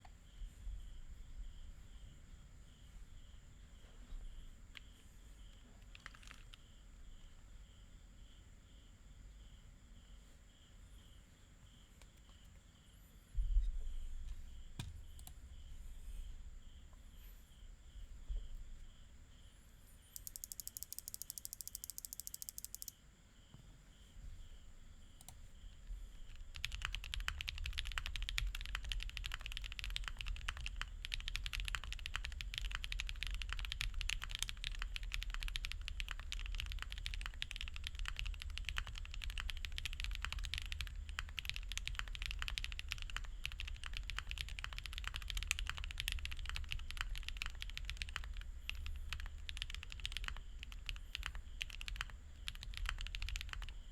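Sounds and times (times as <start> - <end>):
fast typing on mechanical keyboard: 5.8 - 6.7, 20.2 - 22.9, 26.2 - 53.9.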